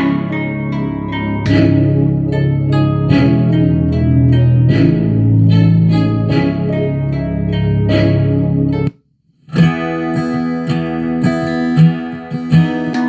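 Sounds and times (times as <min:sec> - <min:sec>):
bass-heavy music track: 0:00.0 - 0:09.0
acoustic guitar song: 0:00.0 - 0:13.0.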